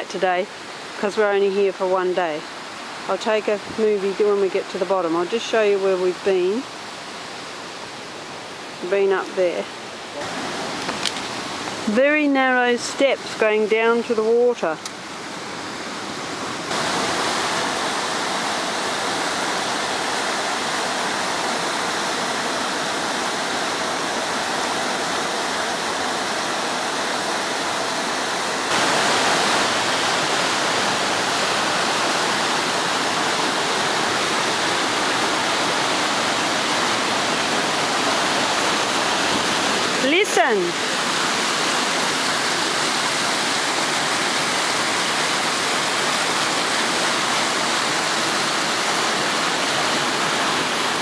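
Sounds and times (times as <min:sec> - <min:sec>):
waterfall rushing: 0:00.0 - 0:51.0.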